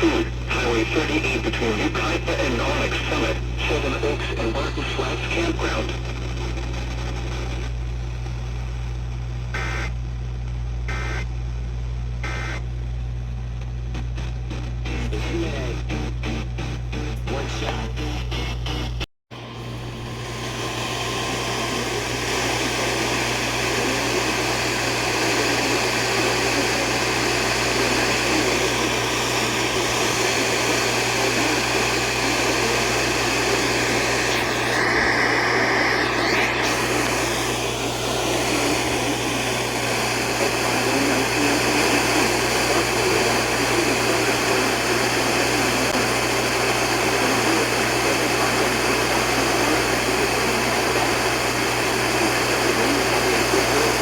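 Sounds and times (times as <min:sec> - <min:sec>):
radio static hiss: 0:00.0 - 0:54.0
high-pitched whine: 0:09.6 - 0:09.9, 0:12.2 - 0:12.7, 0:14.5 - 0:54.0.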